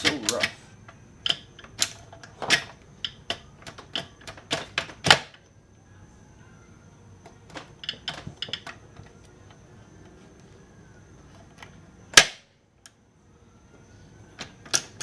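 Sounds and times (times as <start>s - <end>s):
metallic clicks and knocks: 0.0s - 5.3s
faint high whine: 5.3s - 15.0s.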